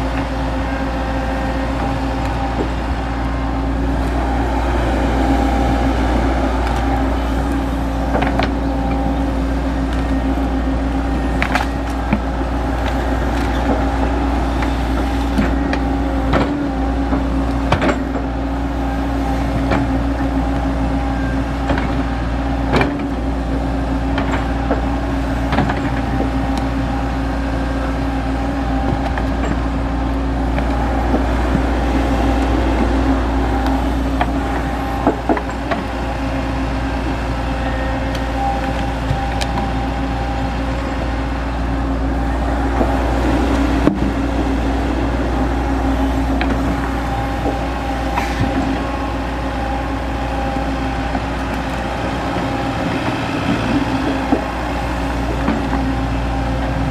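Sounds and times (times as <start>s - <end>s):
excavator diesel engine running: 0.0s - 56.9s
machine knocks and clanks: 11.3s - 18.3s.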